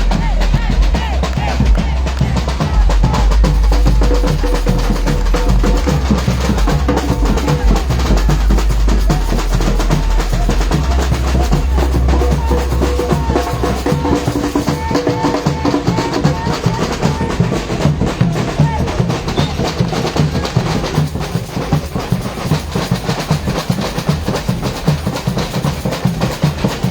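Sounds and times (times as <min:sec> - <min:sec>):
samba percussion ensemble: 0:00.0 - 0:26.9
held pitched notes: 0:02.8 - 0:15.7.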